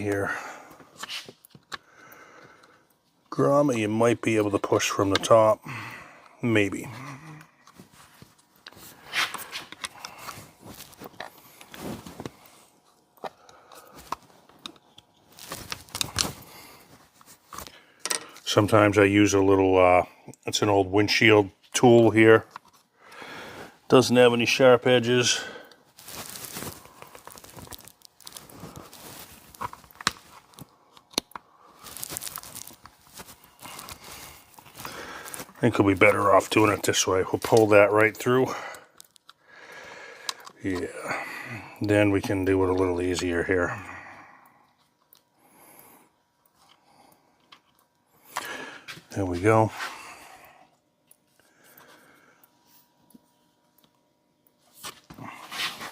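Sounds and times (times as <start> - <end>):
rubber parts scraping and clicking: 1.0 - 1.8.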